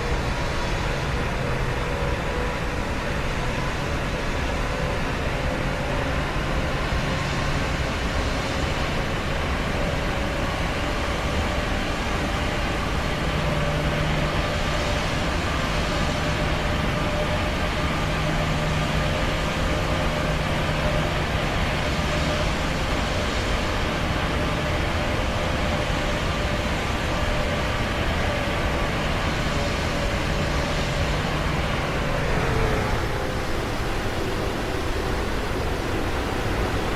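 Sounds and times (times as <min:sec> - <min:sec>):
airplane engine rush: 0:00.0 - 0:36.9
low hum: 0:12.6 - 0:36.9.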